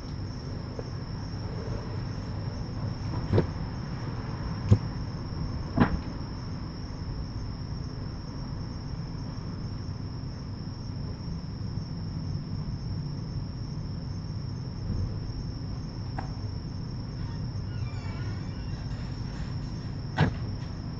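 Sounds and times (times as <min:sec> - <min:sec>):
crickets chirring: 0:00.0 - 0:20.9
faint wavering squeak: 0:17.1 - 0:20.0.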